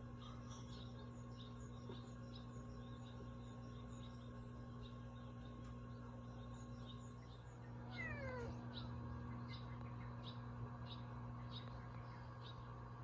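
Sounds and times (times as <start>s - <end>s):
cat meowing: 7.8s - 8.6s.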